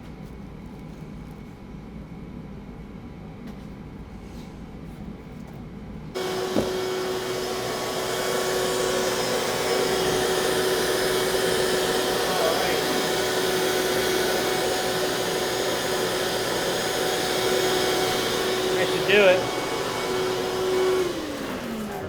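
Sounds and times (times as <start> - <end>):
machine motor whining: 6.2 - 22.0.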